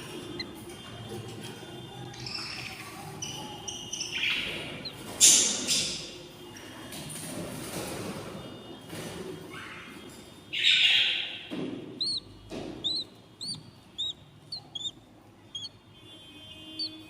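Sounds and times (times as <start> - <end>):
budgerigar chicks calling: 0.0 - 0.7, 2.2 - 6.1, 10.6 - 15.8.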